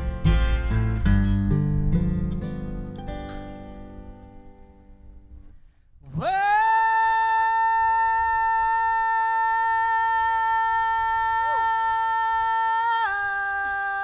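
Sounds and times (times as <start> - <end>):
downward pitch slide: 5.1 - 7.9.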